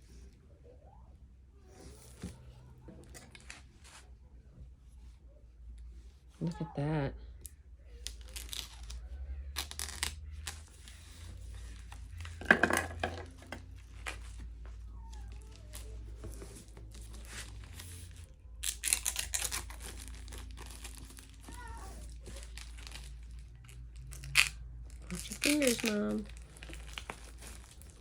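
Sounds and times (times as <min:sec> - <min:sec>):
packaging rustling and crinkling: 0:08.0 - 0:28.0.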